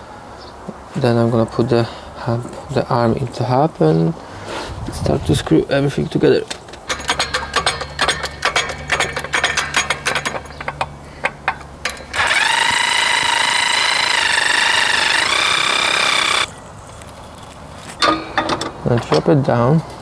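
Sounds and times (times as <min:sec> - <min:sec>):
tools clicking on metal parts: 0:06.4 - 0:16.5, 0:18.0 - 0:19.3
power tool motor whining: 0:07.2 - 0:16.5.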